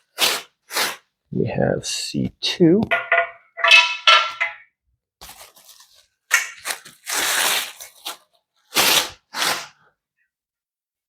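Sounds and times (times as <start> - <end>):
cardboard and styrofoam tearing: 0.0 - 1.0, 5.2 - 9.8.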